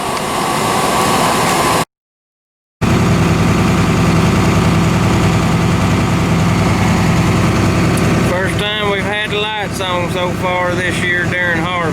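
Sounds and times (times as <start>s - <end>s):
farm machine engine running: 2.8s - 11.9s.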